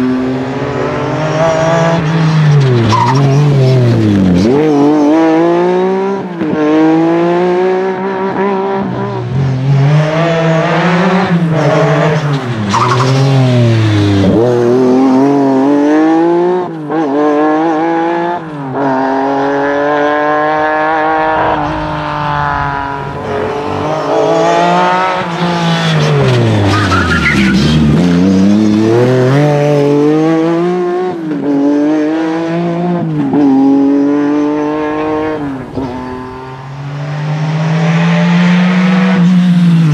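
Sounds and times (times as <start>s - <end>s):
rally car engine revving: 0.0s - 39.9s
tyre squeal: 12.7s - 13.4s, 25.1s - 28.1s.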